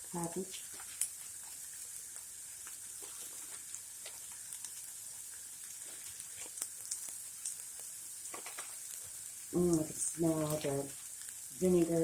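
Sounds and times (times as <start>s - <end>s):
onions sizzling in a pan: 0.0s - 12.0s.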